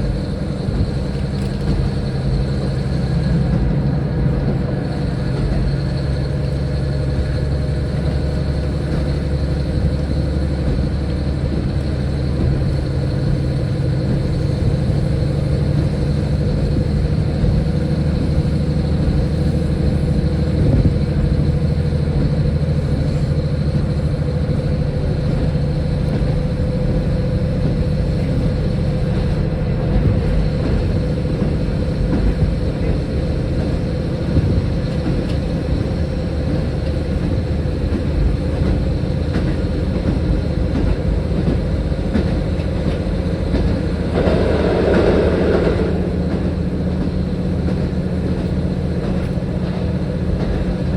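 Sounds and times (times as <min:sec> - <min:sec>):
diesel railcar engine drone: 0:00.0 - 0:50.9.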